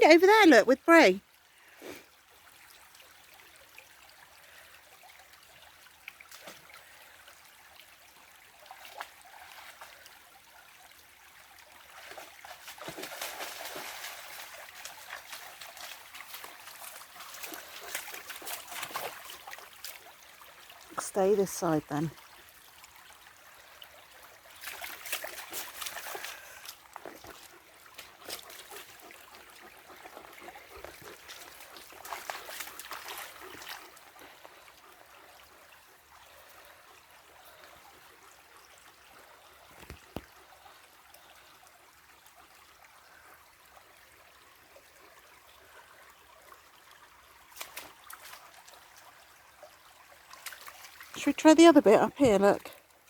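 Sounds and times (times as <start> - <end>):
river trickling over stones: 0.0 - 53.0
splashing in water: 11.9 - 20.2, 24.5 - 34.4.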